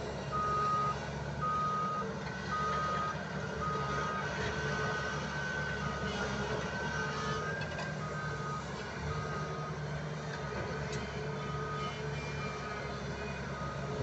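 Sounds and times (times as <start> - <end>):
diesel engine running: 0.0 - 14.0
reversing alarm beeping: 0.3 - 6.0, 7.0 - 9.8, 11.4 - 14.0.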